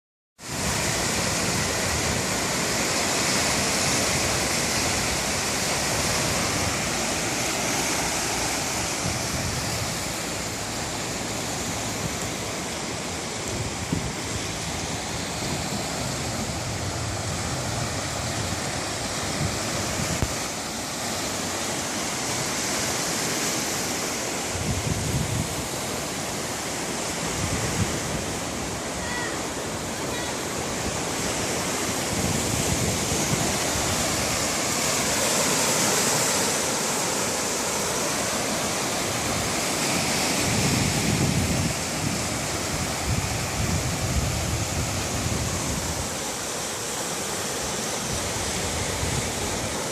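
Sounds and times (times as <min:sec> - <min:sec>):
sea waves breaking on shore: 0:00.4 - 0:49.9.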